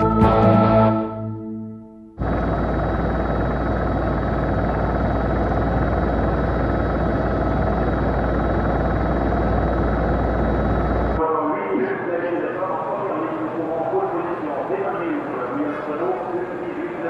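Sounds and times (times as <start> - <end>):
deep hum: 0.0 - 11.2
dense rumbling noise: 2.2 - 11.2.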